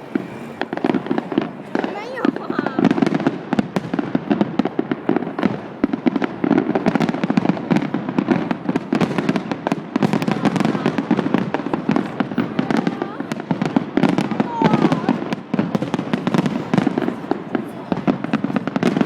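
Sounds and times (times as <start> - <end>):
fireworks bangs and crackles: 0.0 - 19.0.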